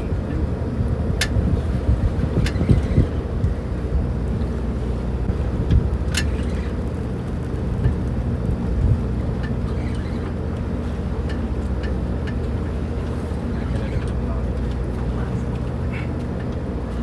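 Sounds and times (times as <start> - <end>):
boat engine humming: 0.0 - 17.0
faint clicks and knocks: 5.6 - 16.7.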